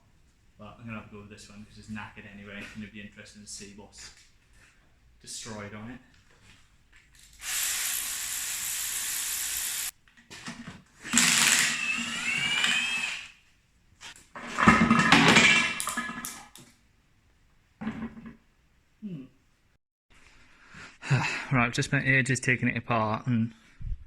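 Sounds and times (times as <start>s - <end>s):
power tool whining: 7.2s - 9.9s, 11.1s - 13.4s.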